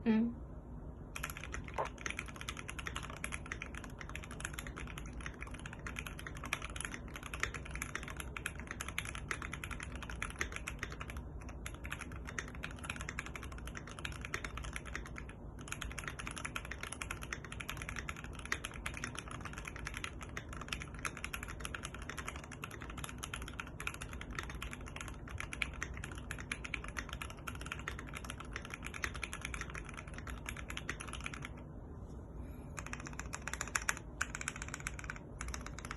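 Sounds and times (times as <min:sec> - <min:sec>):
mechanical keyboard typing: 0:01.2 - 0:31.6, 0:32.7 - 0:35.9.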